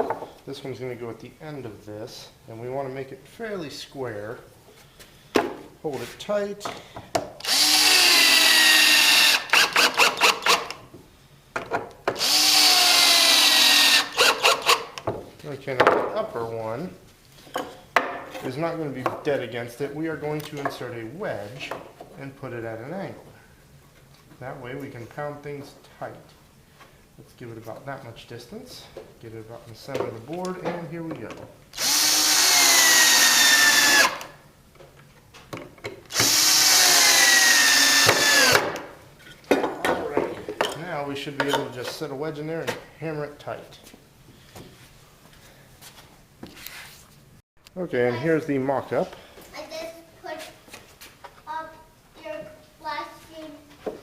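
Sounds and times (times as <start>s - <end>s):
power drill driving screws: 7.4s - 10.8s, 12.2s - 15.0s, 31.8s - 34.3s, 36.1s - 38.7s.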